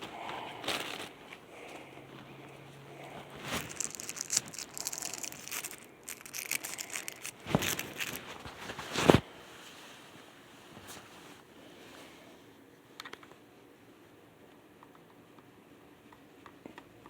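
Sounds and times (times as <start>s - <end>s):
packaging crinkling and rustling: 0.1s - 1.4s, 3.2s - 9.4s.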